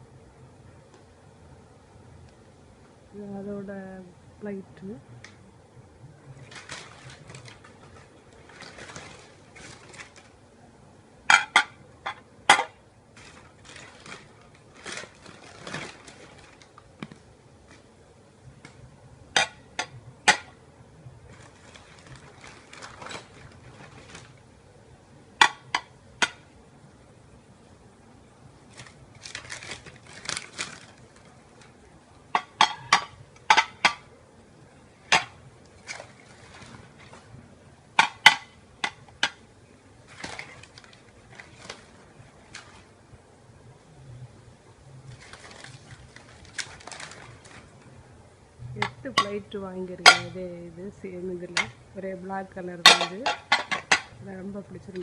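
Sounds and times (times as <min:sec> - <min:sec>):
handling rustle: 0:06.3 - 0:10.4, 0:13.2 - 0:17.9, 0:21.3 - 0:24.5, 0:28.7 - 0:31.8, 0:40.0 - 0:43.0, 0:45.0 - 0:48.0
dinner plates clinking: 0:32.4 - 0:34.1, 0:48.8 - 0:50.4, 0:52.8 - 0:54.1.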